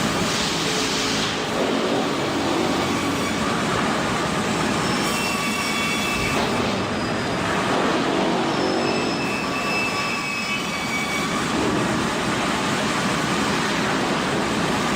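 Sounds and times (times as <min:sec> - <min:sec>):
sawmill machinery clattering: 0:00.0 - 0:14.9
thin high whines: 0:08.4 - 0:11.6.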